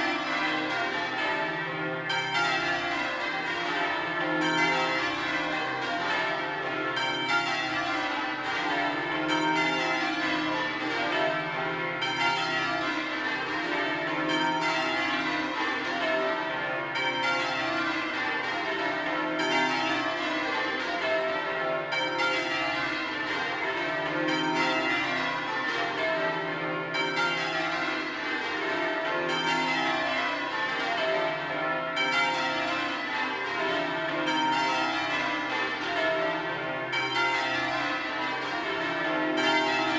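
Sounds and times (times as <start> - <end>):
church bells change ringing: 0.0 - 39.9.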